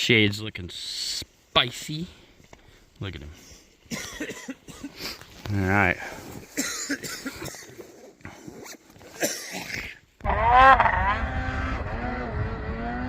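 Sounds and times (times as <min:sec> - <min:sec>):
snowmobile engine revving: 0:10.2 - 0:13.0.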